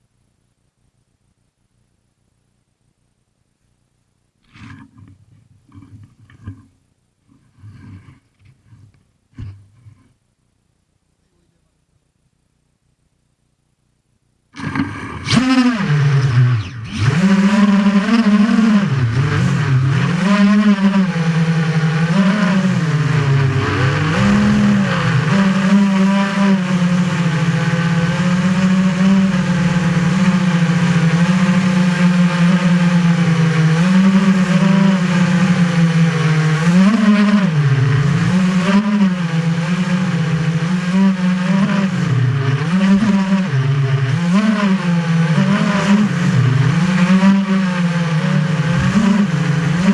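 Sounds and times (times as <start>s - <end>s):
drone motors buzzing: 14.6s - 49.9s.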